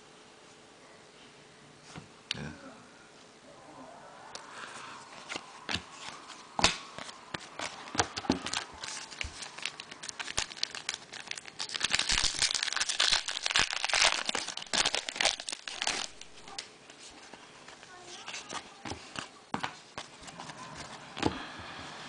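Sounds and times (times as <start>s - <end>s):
card wrappers tearing and crinkling: 5.3s - 16.7s.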